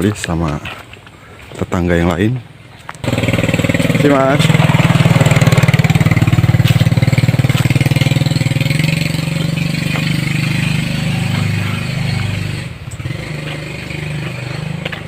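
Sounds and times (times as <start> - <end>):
motorcycle engine running: 3.0 - 15.0.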